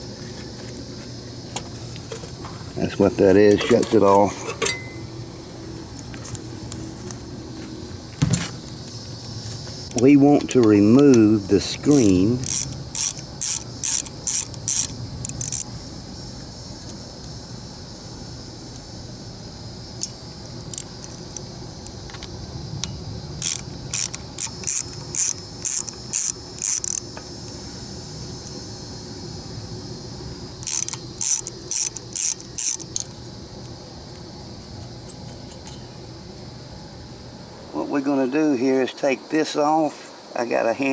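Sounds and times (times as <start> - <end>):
ratchet wrench clicking: 9.9 - 15.7, 20.0 - 21.4, 23.4 - 27.1, 30.6 - 33.2.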